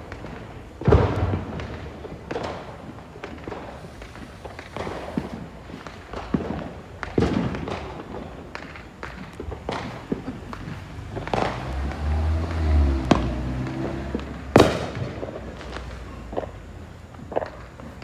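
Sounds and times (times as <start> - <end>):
fireworks cracking and banging: 0.0 - 18.0.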